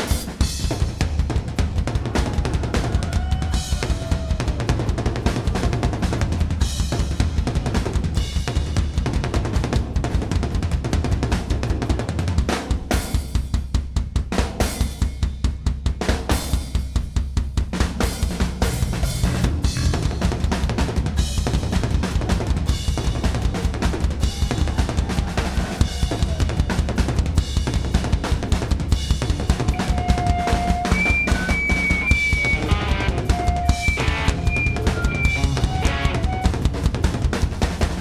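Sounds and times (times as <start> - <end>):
drum kit: 0.0 - 38.0
rock band playing: 29.4 - 37.3.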